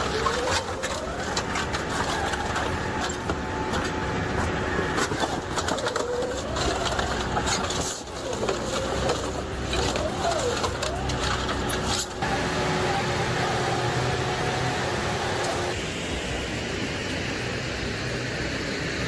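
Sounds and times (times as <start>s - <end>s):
industrial shredder running: 0.0s - 16.1s.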